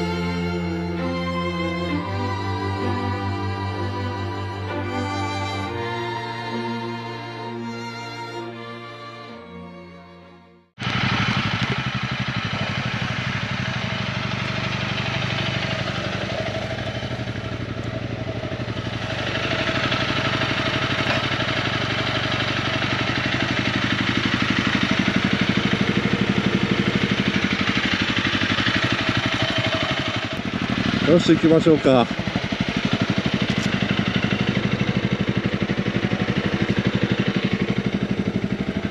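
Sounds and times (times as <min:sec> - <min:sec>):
motorcycle engine idling: 0:10.8 - 0:38.9.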